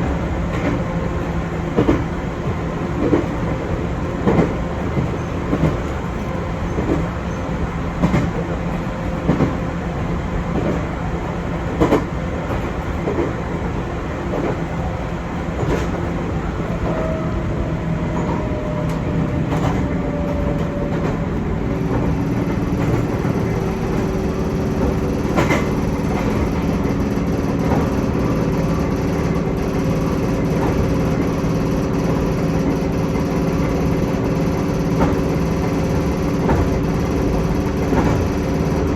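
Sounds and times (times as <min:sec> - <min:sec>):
steady train hum: 0:00.0 - 0:38.9
train wheels rumbling on rail: 0:00.0 - 0:38.9
clacks over rail joints: 0:00.5 - 0:09.7, 0:10.5 - 0:14.7, 0:15.4 - 0:17.3, 0:17.9 - 0:38.9.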